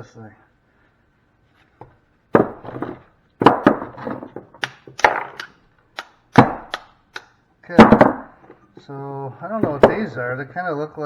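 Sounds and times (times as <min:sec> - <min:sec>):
sharp ringing knocks on metal: 0:06.4 - 0:06.9.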